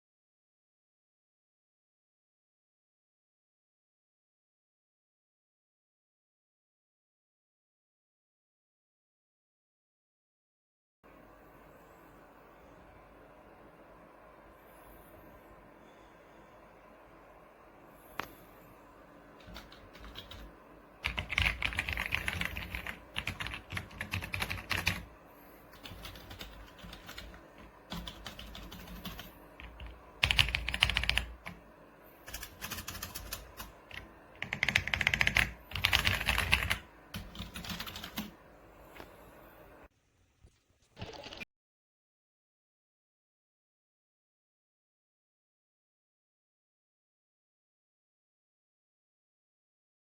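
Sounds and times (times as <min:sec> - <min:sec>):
mechanical keyboard typing: 0:19.4 - 0:25.1, 0:25.7 - 0:31.6, 0:32.2 - 0:38.4.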